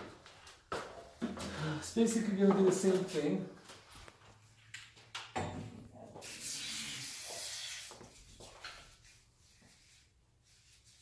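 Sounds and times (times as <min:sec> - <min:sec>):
aerosol can hissing: 0:06.2 - 0:08.1.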